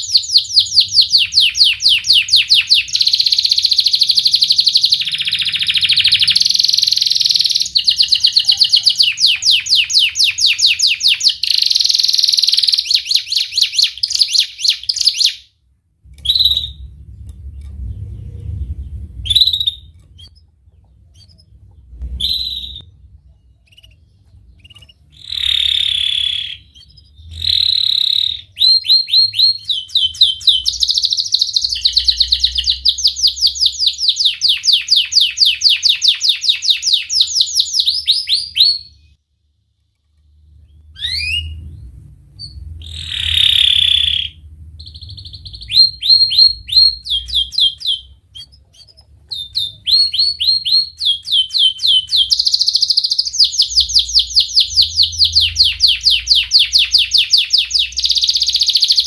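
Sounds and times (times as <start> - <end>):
canary singing with trills: 0.0 - 39.2, 40.5 - 59.0.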